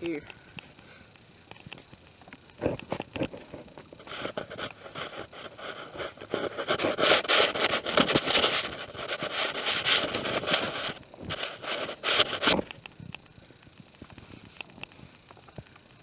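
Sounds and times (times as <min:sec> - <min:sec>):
digging in loose soil: 0:03.1 - 0:12.7.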